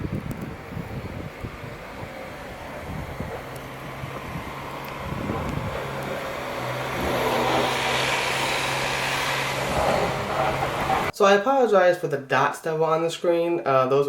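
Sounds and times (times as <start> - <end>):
vehicle engine humming: 0.0 - 11.1.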